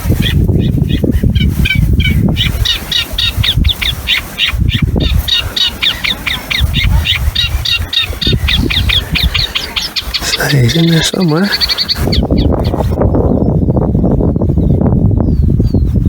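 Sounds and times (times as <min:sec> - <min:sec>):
warbler singing: 0:00.0 - 0:15.9.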